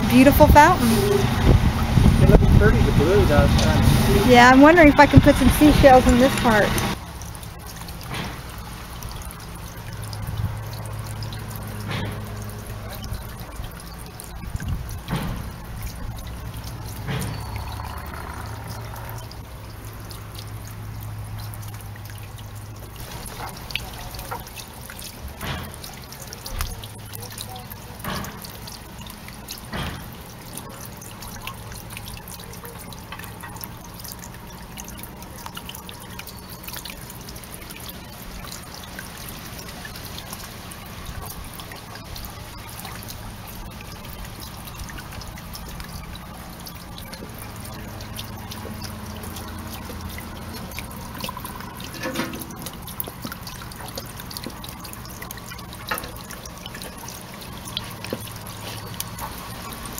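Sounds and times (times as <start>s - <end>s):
fountain water trickling and dripping: 0.0s - 59.9s.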